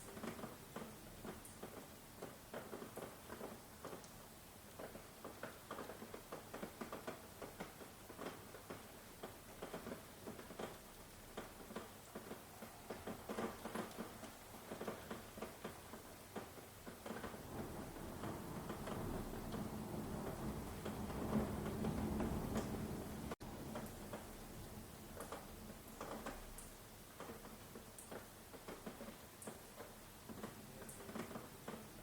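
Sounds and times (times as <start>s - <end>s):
rain pattering on hard surface: 0.0s - 32.0s
thunder rumble: 17.3s - 23.8s.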